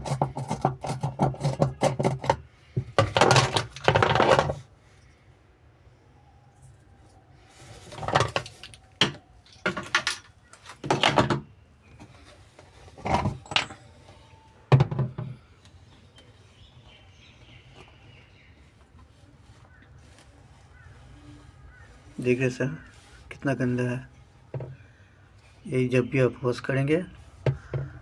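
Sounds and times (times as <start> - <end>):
hard objects clattering: 0.0 - 4.7, 7.5 - 15.5, 27.3 - 28.0.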